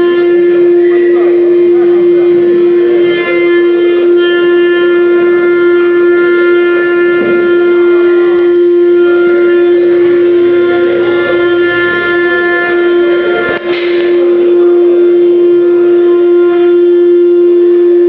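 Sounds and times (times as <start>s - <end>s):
bit cutting wood: 0.0s - 17.1s
router spindle high whine: 0.0s - 18.0s.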